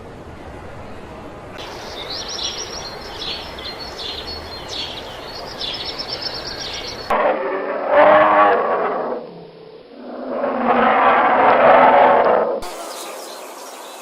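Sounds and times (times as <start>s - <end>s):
steady outdoor hiss: 0.0s - 14.0s
small birds chirping: 1.6s - 7.1s
low drawn-out animal call: 6.2s - 12.6s.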